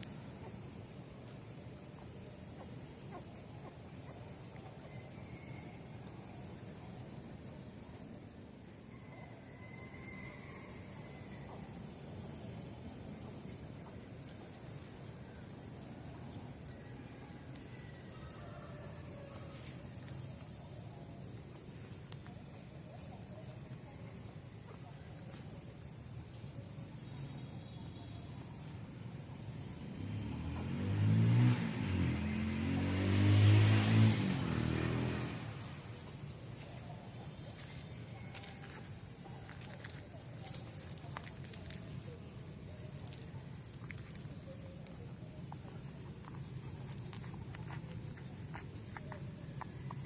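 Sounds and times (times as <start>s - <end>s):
insect chirping: 0.0s - 50.0s
insects droning high-pitched: 0.0s - 50.0s
vehicle engine passing by: 29.4s - 36.6s, 41.6s - 50.0s.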